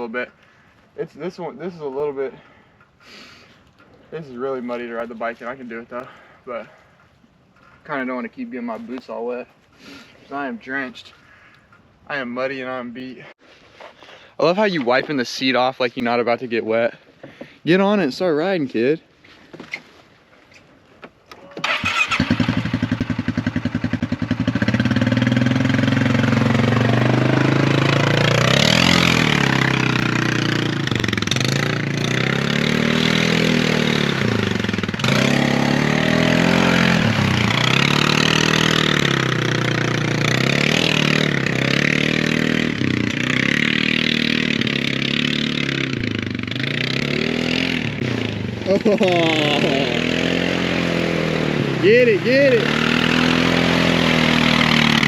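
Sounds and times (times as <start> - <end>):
quad bike engine revving: 21.6 - 55.0.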